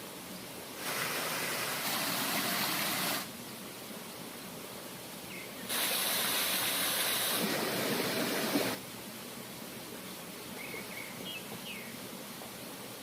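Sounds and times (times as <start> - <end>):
loud hiss: 0.0 - 3.4, 5.6 - 8.8
stream rushing: 0.0 - 4.0, 4.7 - 10.6.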